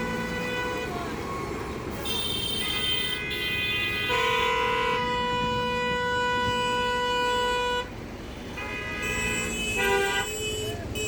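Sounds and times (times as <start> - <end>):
vehicle horn long note: 2.0 - 7.9.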